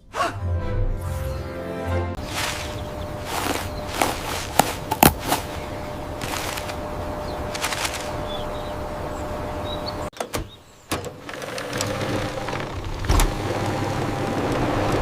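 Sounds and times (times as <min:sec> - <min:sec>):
crackling bursts: 0:02.2 - 0:08.3
machine hum and hiss: 0:02.2 - 0:10.1.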